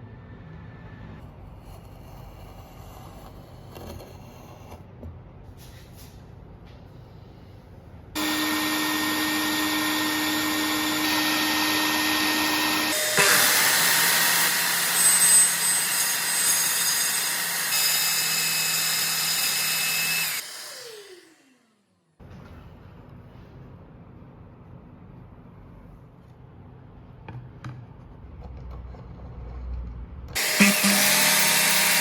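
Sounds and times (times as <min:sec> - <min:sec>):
circular saw running: 0:08.2 - 0:21.7, 0:30.4 - 0:32.0.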